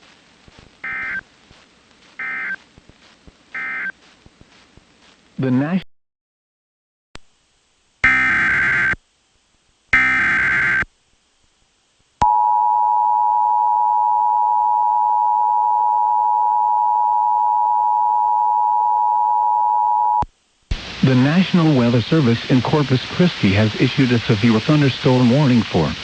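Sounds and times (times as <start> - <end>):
warbling digital data bursts: 10.0 - 10.8.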